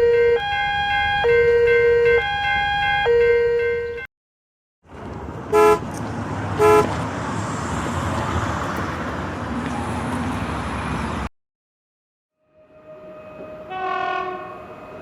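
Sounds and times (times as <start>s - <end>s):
traffic noise: 0.0s - 4.1s, 4.8s - 11.3s, 12.6s - 15.0s
vehicle horn toots: 5.5s - 5.8s, 6.6s - 6.9s, 13.4s - 14.7s.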